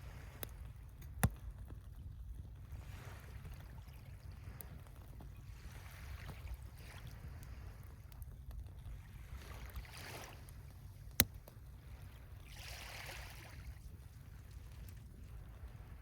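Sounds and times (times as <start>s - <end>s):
sea waves washing on beach: 9.2s - 11.0s, 11.9s - 16.0s.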